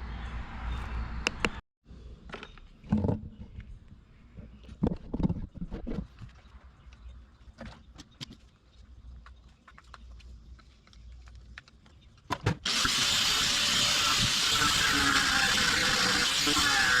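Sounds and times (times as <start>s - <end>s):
angle grinder cutting steel: 12.7s - 17.0s.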